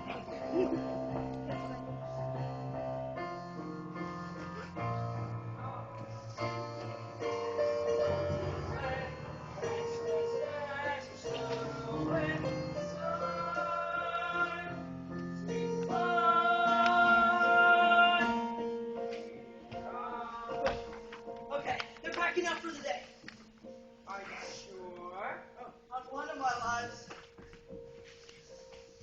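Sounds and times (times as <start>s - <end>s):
keyboard playing sustained chords: 0.0s - 19.5s
instrumental accompaniment: 0.0s - 24.1s
young voices singing: 5.4s - 18.6s, 19.4s - 21.0s.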